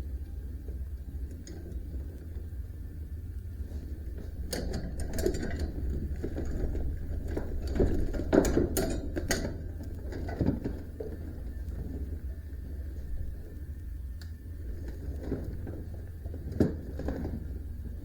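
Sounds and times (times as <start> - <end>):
metal clicks and rattles: 4.4 - 11.2.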